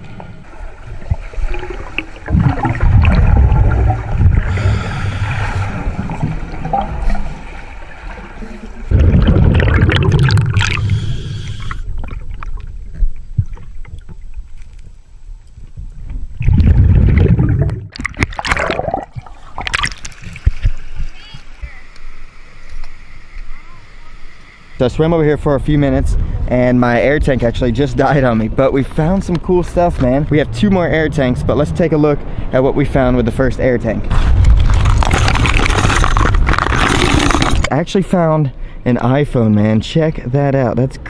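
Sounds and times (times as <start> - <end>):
exhaled bubbles gurgling underwater: 0.0 - 14.5, 16.2 - 20.8.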